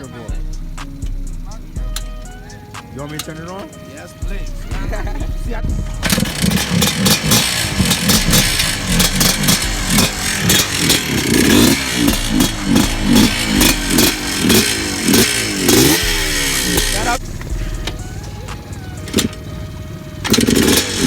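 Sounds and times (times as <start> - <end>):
small engine revving in blips: 0.0 - 21.0
mechanical clatter: 4.6 - 19.6, 20.2 - 21.0.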